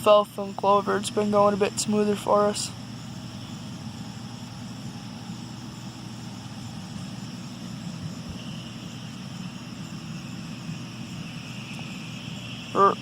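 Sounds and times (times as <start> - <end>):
tractor diesel engine running: 0.0 - 13.0
high steady belt squeal: 0.7 - 13.0.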